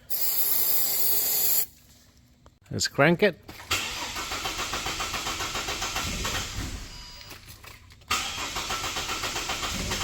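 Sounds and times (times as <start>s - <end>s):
car engine cranking on starter: 3.6s - 7.0s, 8.1s - 10.0s.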